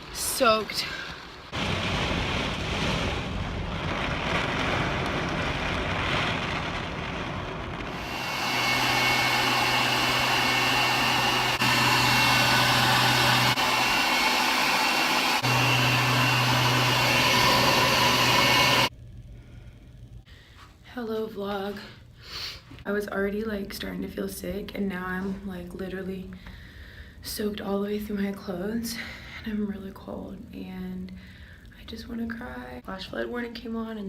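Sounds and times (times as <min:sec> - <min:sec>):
heavy rain: 0:00.0 - 0:08.3
low hum: 0:00.8 - 0:22.2.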